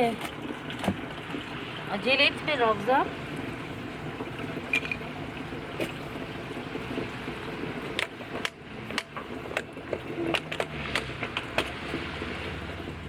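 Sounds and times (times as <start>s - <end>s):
water running into jugs: 0.0s - 13.0s
sharp knocks and clicks: 7.9s - 12.0s.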